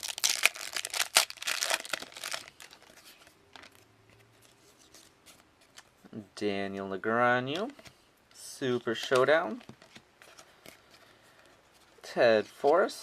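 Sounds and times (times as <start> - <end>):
foil wrapper crinkling: 0.0 - 3.8
cards rustling and clicking: 0.0 - 6.0.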